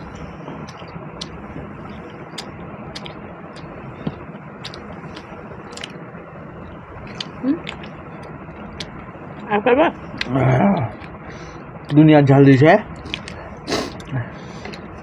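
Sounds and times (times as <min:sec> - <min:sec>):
person chewing food: 0:00.0 - 0:12.0, 0:12.9 - 0:15.0
background hiss: 0:00.0 - 0:15.0
wet mouth clicks and smacks: 0:00.1 - 0:06.0, 0:06.6 - 0:09.5, 0:10.1 - 0:11.2, 0:13.0 - 0:14.9.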